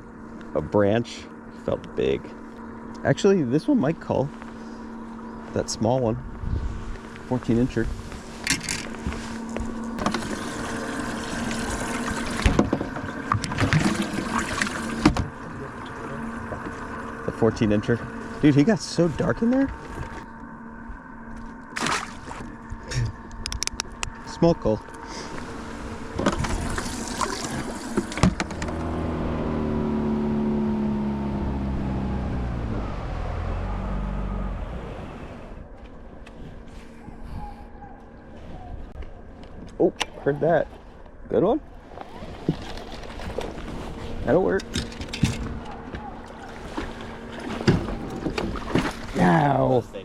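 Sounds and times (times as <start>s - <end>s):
outboard motor running: 0.0s - 38.3s, 40.2s - 50.0s
low steady hum: 0.0s - 50.0s
water running: 10.0s - 12.6s, 13.4s - 17.4s, 26.4s - 28.2s
knocks and clatters in boat: 12.3s - 15.4s, 26.2s - 28.8s, 42.0s - 49.4s.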